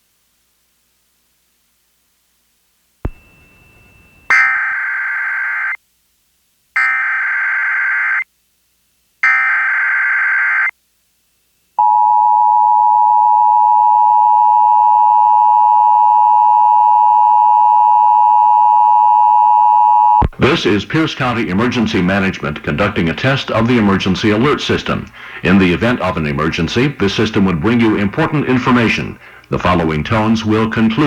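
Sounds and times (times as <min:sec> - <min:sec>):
two-tone attention signal: 0:03.1 - 0:05.7.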